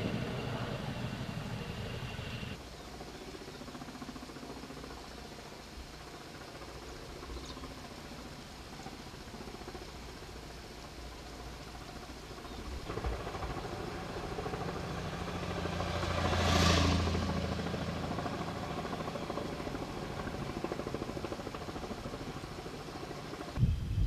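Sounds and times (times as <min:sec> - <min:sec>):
vehicle engine passing: 0:14.0 - 0:18.8.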